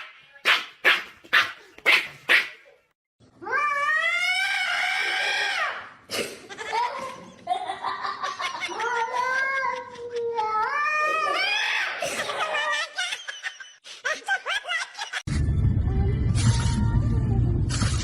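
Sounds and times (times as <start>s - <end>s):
cat yowling: 3.4s - 5.6s.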